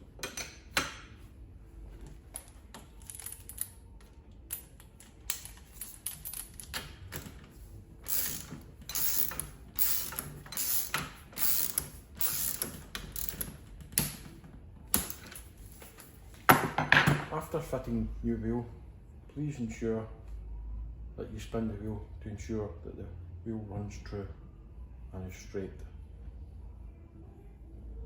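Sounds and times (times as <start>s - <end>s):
ratchet wrench clicking: 8.0s - 14.1s.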